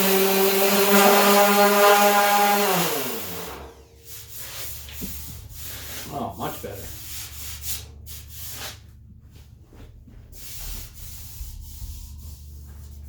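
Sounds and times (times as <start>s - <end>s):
sandpaper rubbing body filler: 10.3s - 13.0s.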